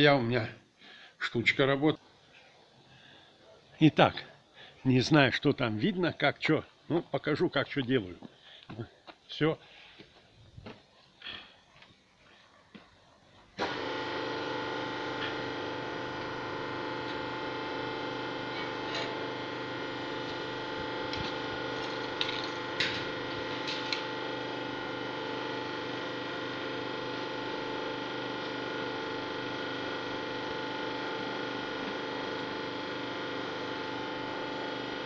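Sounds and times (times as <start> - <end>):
machine humming: 13.6 - 35.0.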